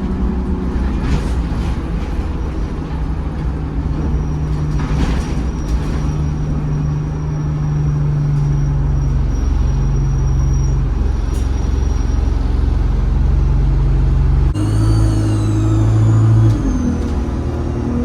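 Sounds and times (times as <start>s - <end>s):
bus engine drone: 0.0s - 18.0s
turbo whistle: 14.6s - 16.8s.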